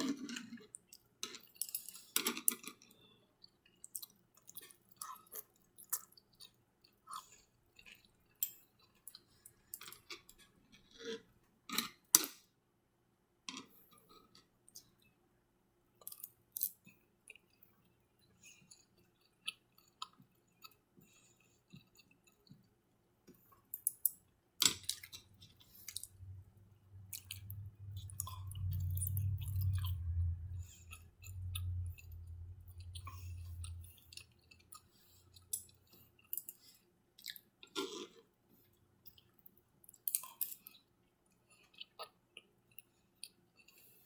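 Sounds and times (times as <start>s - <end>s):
chewing food: 0.0s - 12.4s, 16.0s - 44.0s
low rumble: 25.9s - 34.3s.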